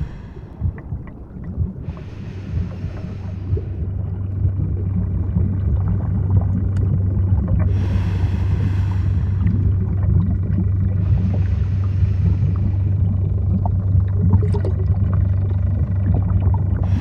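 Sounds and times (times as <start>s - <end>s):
low underwater rumble: 0.0s - 17.0s
hiss: 1.9s - 3.7s.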